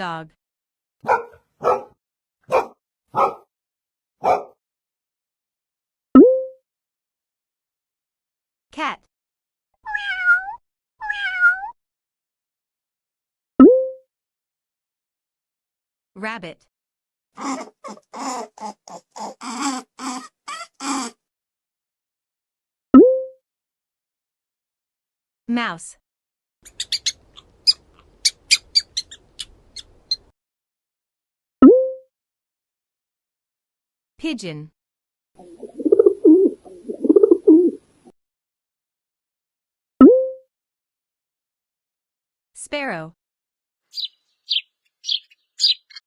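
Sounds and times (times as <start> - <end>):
brief tone: 6.2 - 6.6
cat meowing: 9.8 - 11.8
mouse squeaking: 26.6 - 30.3, 43.9 - 46.0.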